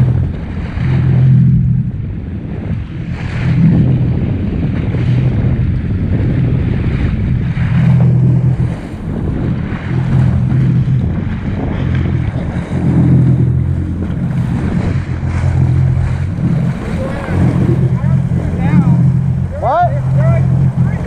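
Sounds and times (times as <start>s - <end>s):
jet ski engine running: 0.0s - 21.0s
rushing wind and water: 0.0s - 21.0s.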